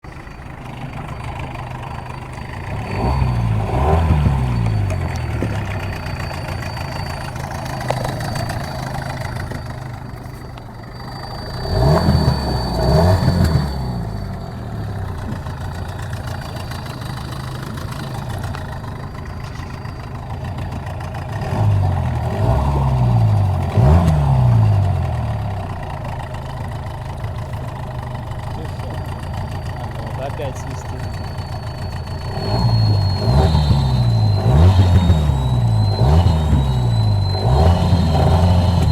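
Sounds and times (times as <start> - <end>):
outboard motor idling and revving: 0.0 - 38.9
high steady whistle: 3.0 - 21.1, 28.4 - 38.9.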